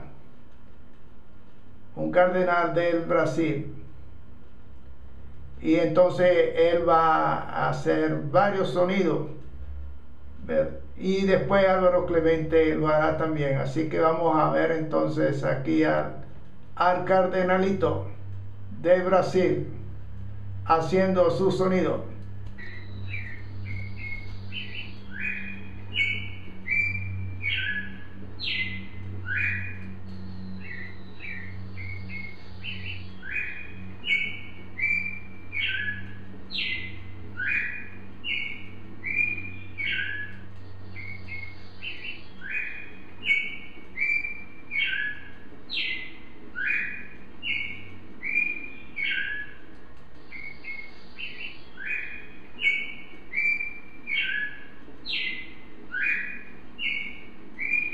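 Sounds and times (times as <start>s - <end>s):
bird singing whistled notes: 20.7s - 49.6s, 50.2s - 57.9s.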